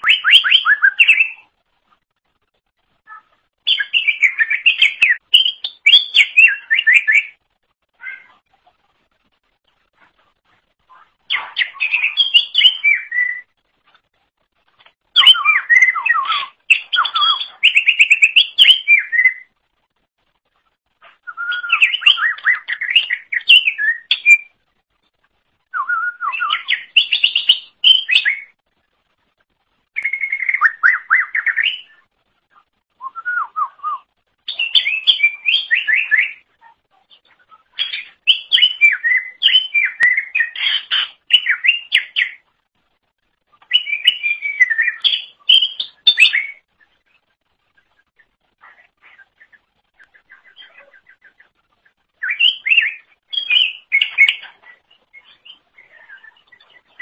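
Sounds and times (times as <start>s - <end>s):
bird singing whistled phrases: 0.0s - 1.5s, 3.1s - 7.4s, 11.3s - 13.5s, 15.2s - 19.5s, 21.2s - 24.5s, 25.7s - 28.6s, 30.0s - 32.0s, 33.0s - 36.5s, 37.8s - 42.4s, 43.7s - 46.6s, 52.2s - 57.0s.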